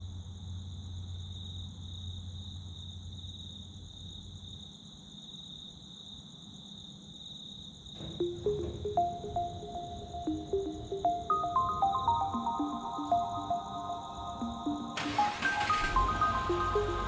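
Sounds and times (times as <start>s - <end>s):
music with plucked notes: 8.2s - 17.0s.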